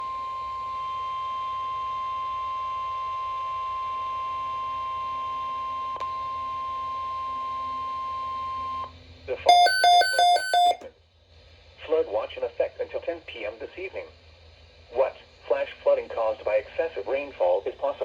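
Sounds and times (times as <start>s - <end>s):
high-pitched alarm beep: 9.5s - 10.8s.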